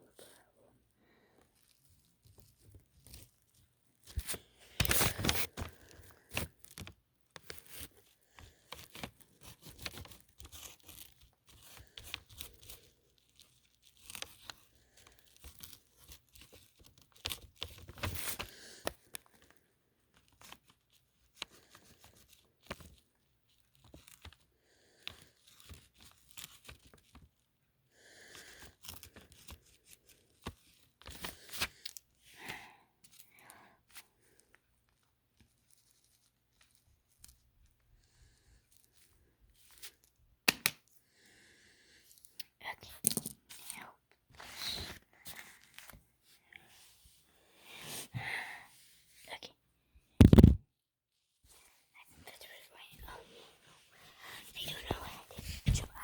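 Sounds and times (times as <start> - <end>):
hands crinkling and rustling: 1.0 - 27.6, 28.2 - 41.0, 42.0 - 47.1.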